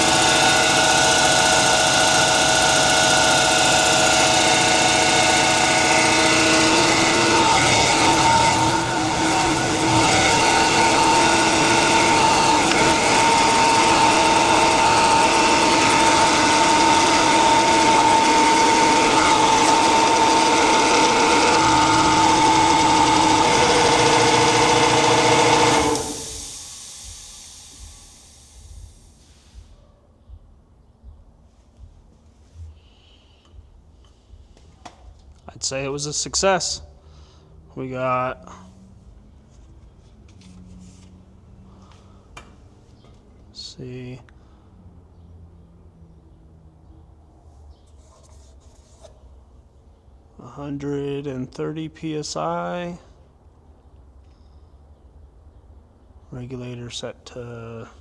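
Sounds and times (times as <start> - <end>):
air compressor running: 0.0 - 29.8.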